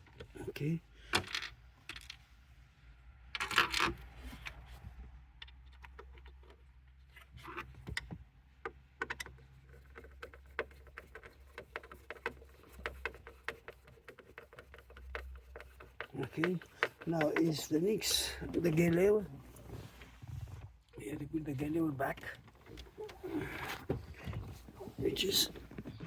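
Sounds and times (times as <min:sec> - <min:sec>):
scattered clicks and light taps: 0:07.9 - 0:19.2.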